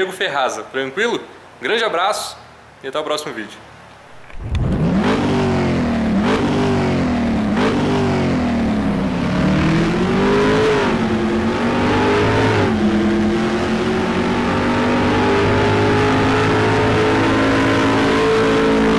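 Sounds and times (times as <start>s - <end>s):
car engine accelerating hard: 4.3s - 18.9s.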